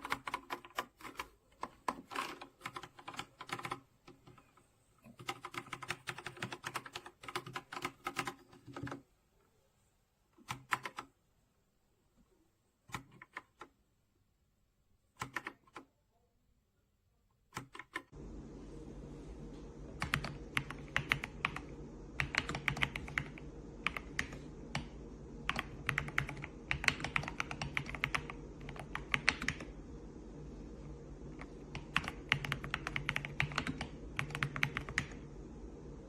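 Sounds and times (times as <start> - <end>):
mechanical keyboard typing: 0.0 - 4.5, 5.1 - 9.0, 10.4 - 11.1, 12.9 - 13.7, 15.2 - 15.9, 17.5 - 18.1, 20.0 - 29.7, 31.4 - 35.2
steady low hum: 18.1 - 36.0.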